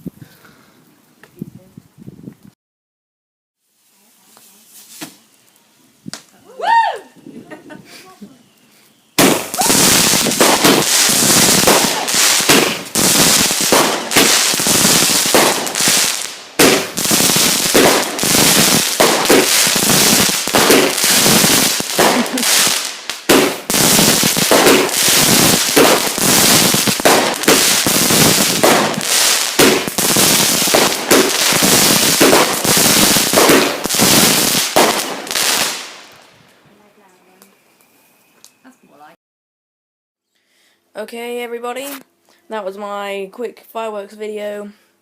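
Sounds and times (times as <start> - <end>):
fireworks bangs and crackles: 9.2 - 36.4.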